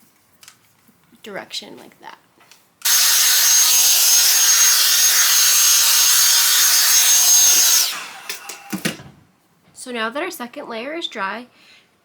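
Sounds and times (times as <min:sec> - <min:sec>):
hair dryer blowing: 0:02.8 - 0:09.0.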